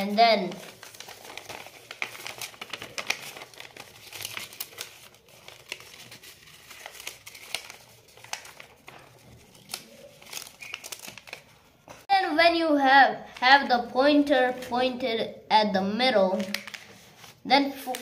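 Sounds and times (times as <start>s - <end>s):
paper crinkling and folding: 0.0s - 12.1s, 16.2s - 18.0s.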